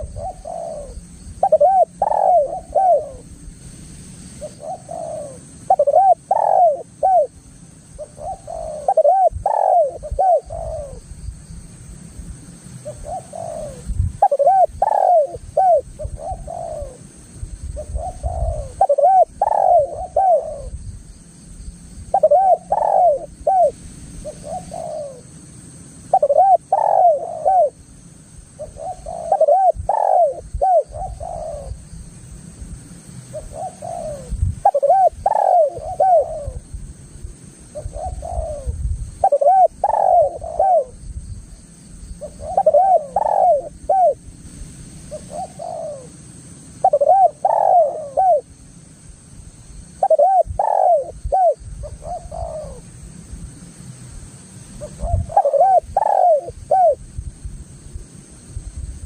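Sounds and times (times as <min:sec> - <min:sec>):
dove cooing: 0:00.0 - 0:03.3, 0:04.4 - 0:11.0, 0:12.8 - 0:17.1, 0:17.8 - 0:20.8, 0:22.1 - 0:25.3, 0:26.1 - 0:27.9, 0:28.6 - 0:31.8, 0:33.3 - 0:36.7, 0:37.7 - 0:41.0, 0:42.2 - 0:44.2, 0:45.1 - 0:46.2, 0:46.8 - 0:48.6, 0:50.0 - 0:52.9, 0:54.8 - 0:57.0.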